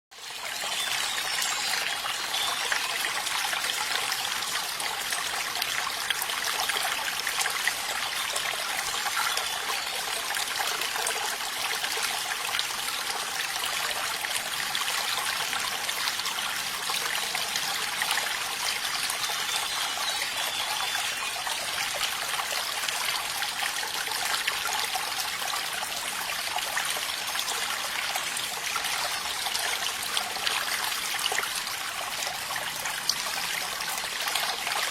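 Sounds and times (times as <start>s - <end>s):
water trickling and splashing: 0.2s - 34.9s.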